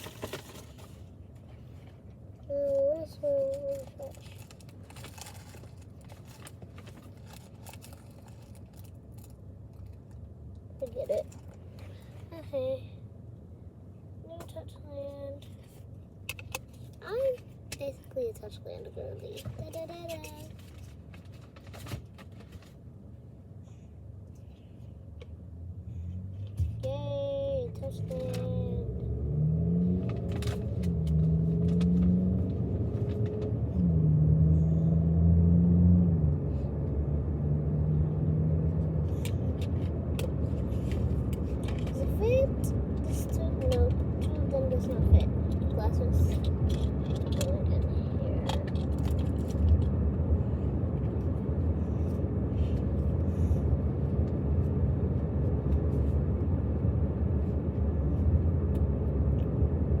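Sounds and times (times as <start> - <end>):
car engine and road rumble: 0.0 - 60.0.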